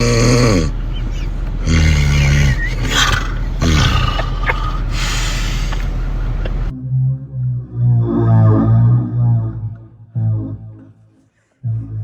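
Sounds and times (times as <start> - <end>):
man snoring loudly: 0.0 - 0.8, 1.6 - 5.5.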